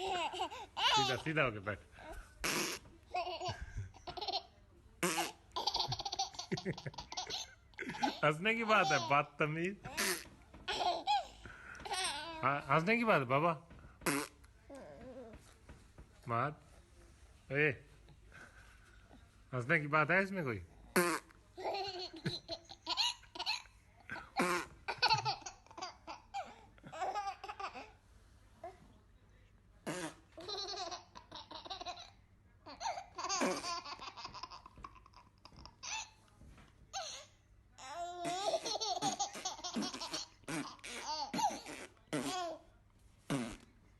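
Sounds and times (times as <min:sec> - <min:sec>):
baby giggling: 0:00.0 - 0:01.3, 0:02.4 - 0:09.1, 0:09.8 - 0:12.4, 0:24.4 - 0:27.9, 0:30.4 - 0:36.2, 0:37.9 - 0:42.6.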